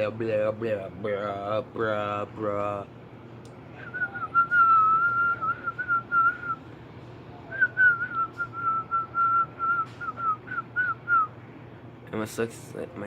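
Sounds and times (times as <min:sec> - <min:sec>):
person whistling a tune: 0:03.8 - 0:06.6, 0:07.5 - 0:11.3.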